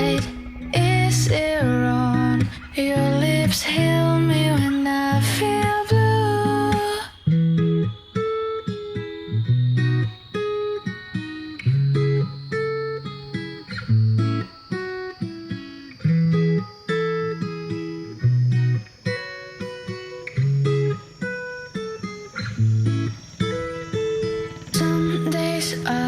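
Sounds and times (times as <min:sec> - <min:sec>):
low bass notes: 0:00.0 - 0:04.6
acoustic guitar picking: 0:00.0 - 0:26.0.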